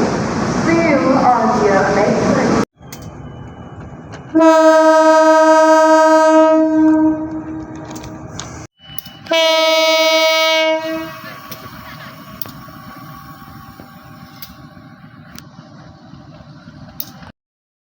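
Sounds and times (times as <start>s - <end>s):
diesel locomotive horn blast: 4.3s - 8.0s, 9.0s - 14.8s.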